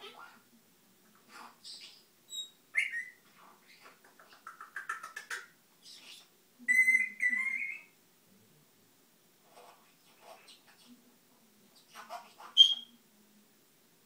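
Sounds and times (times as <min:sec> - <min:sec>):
parrot whistling and chirping: 0:01.6 - 0:03.9, 0:05.8 - 0:07.9, 0:12.0 - 0:12.9.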